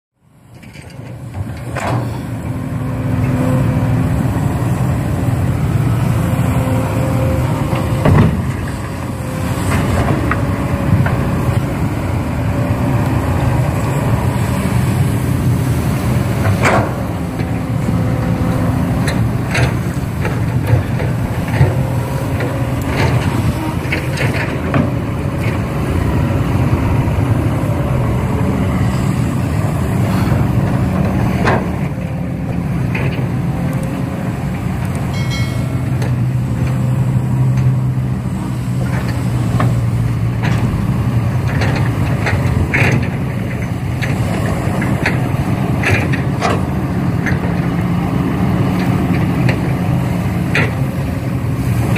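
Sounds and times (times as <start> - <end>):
large engine rumbling: 0.2 - 51.9
sharp clicks and knocks: 0.5 - 2.2, 50.5 - 50.9.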